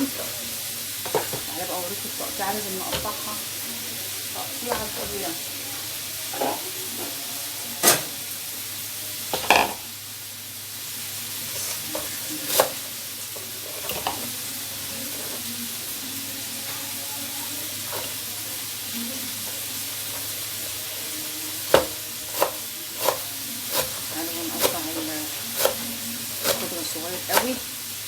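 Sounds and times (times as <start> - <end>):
meat sizzling on a grill pan: 0.0 - 28.0
knife knocking on cutting board: 21.7 - 23.2.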